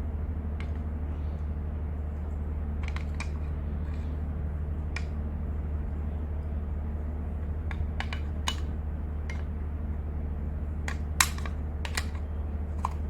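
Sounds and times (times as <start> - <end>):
steady low hum: 0.0 - 13.0
plastic parts clicking: 10.9 - 12.2, 12.8 - 13.0.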